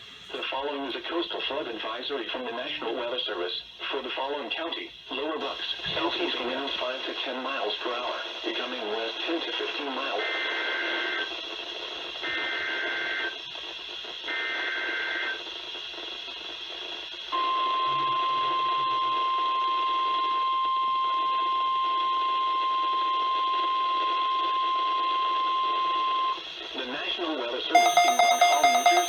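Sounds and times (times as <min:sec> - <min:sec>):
radio hiss: 0:00.0 - 0:17.3
buzzy two-tone data bursts: 0:27.8 - 0:29.0
steady alarm tone: 0:27.8 - 0:29.0.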